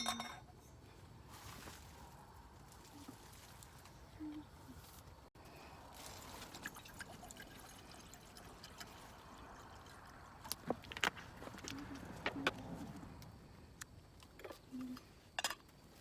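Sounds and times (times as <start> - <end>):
liquid trickling: 5.9 - 10.6.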